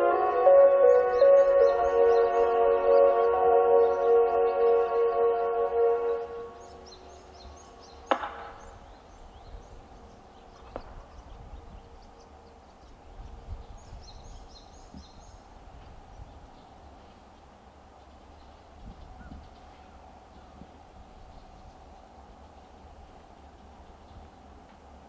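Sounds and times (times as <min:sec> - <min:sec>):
outdoor chime note: 0:00.0 - 0:06.7.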